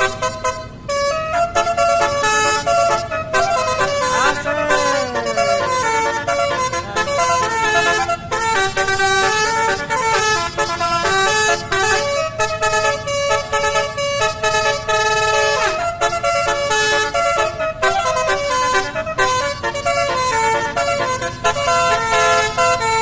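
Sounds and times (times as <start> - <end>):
multi-tone bus horn melody: 0.0 - 23.0.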